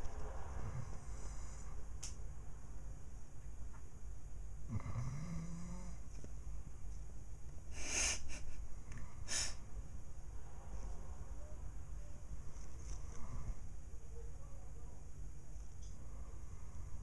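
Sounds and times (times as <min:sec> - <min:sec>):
man snoring: 0:04.7 - 0:06.0
short hissing breaths: 0:09.2 - 0:09.6.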